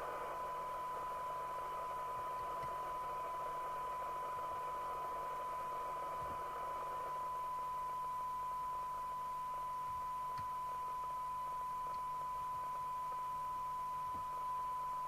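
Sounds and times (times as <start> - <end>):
radio hiss: 0.0 - 8.0.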